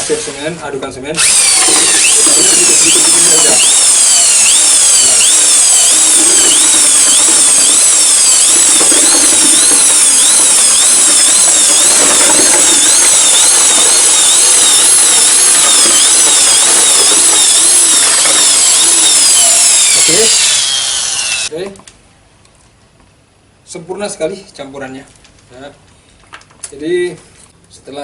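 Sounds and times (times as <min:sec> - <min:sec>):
electric mixer drill whining: 0:01.2 - 0:21.5
mortar churning in bucket: 0:01.2 - 0:21.5.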